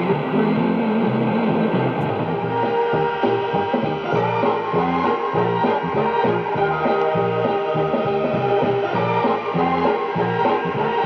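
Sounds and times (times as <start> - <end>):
guitar pop music on radio speaker: 0.0 - 11.0.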